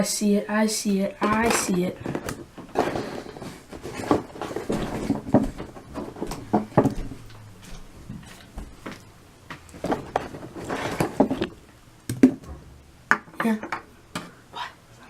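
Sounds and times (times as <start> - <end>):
packaging clicks and rustles: 1.3 - 6.9, 9.7 - 11.6.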